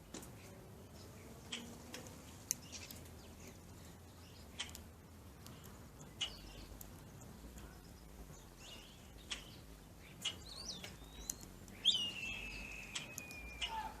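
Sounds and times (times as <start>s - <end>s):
birds chirping: 0.0s - 14.0s
bending whistled bird note: 11.8s - 13.9s.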